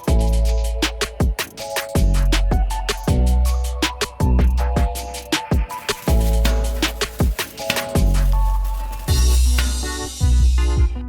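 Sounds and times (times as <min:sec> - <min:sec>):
electronic music with deep bass: 0:00.0 - 0:11.0.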